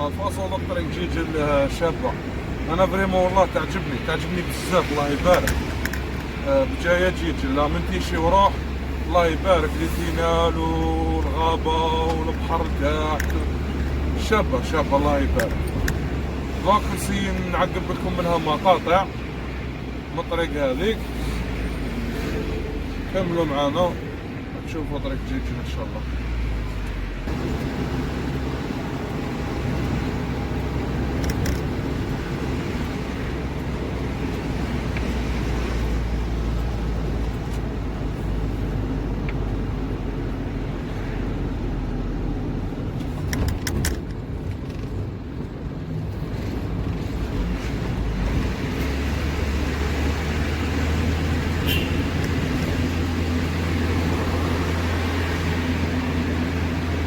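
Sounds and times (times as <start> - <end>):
road noise: 0.0 - 57.0
truck engine hum: 0.0 - 57.0
sharp clicks: 31.2 - 31.8.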